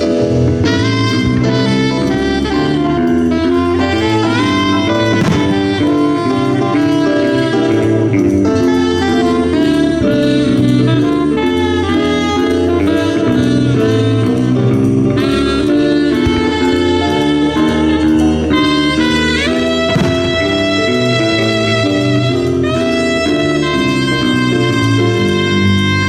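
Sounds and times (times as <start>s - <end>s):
jazz band playing: 0.0s - 26.0s
saxophone melody: 0.0s - 26.0s.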